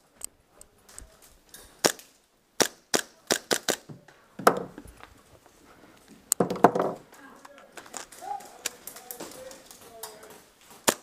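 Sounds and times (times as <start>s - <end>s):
airsoft guns firing single shots: 1.8s - 3.9s.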